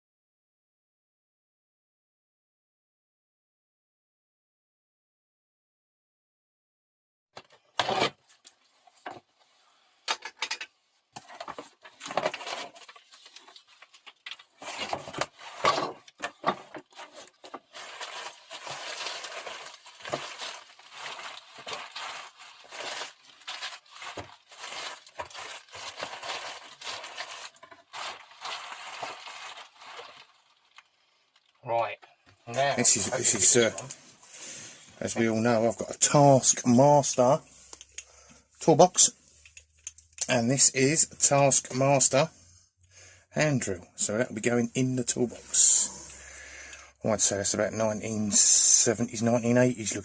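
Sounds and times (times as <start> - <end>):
packaging rustling: 11.2 - 31.6.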